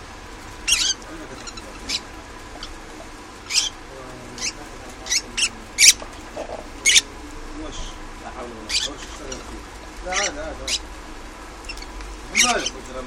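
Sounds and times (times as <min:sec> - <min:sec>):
birds shrill chirps: 0:00.6 - 0:07.1, 0:08.6 - 0:10.9, 0:11.6 - 0:12.9.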